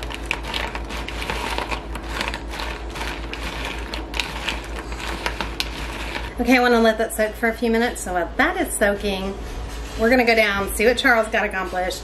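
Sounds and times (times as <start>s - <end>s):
utensil clicking and scraping bowl: 0.0s - 6.4s.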